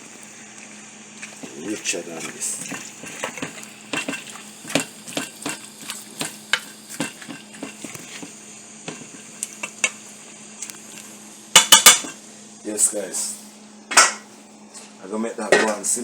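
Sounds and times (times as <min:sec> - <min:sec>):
curry sizzling: 0:00.0 - 0:12.5.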